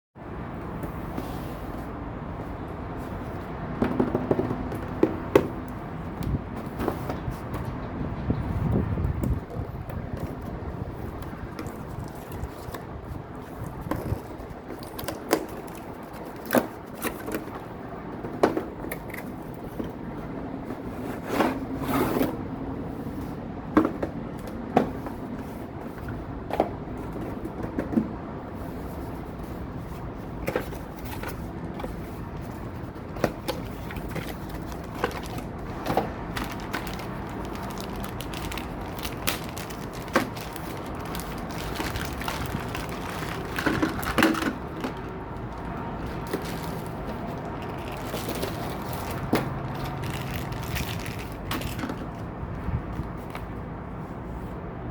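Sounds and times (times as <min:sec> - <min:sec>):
hands unpacking toy packaging: 0:30.5 - 0:52.2.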